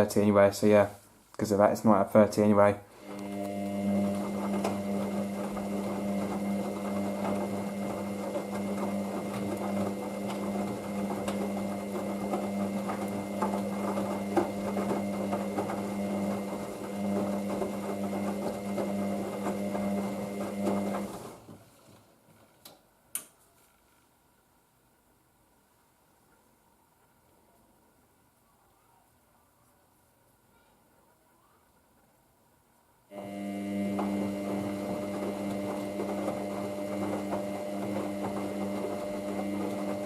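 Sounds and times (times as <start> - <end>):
washing machine running: 2.9 - 21.5, 33.1 - 40.0.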